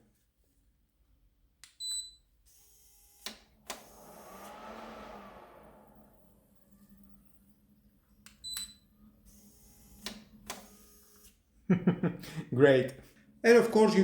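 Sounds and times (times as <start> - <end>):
computer fan whoosh: 3.6 - 7.9.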